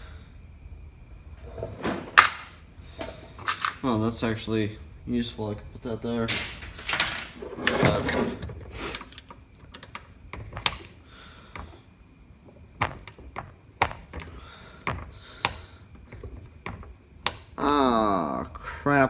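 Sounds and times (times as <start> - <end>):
screwdriver and metal parts knocking: 3.4 - 3.8.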